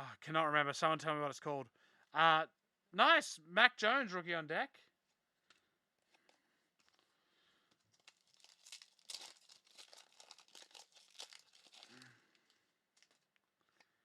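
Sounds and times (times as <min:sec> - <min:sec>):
wrapper crinkling and tearing: 0:07.7 - 0:13.9.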